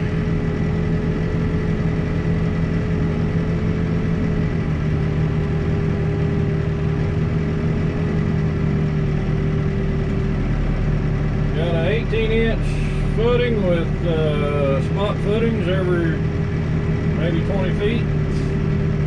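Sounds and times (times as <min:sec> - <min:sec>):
diesel engine running steadily: 0:00.0 - 0:19.0.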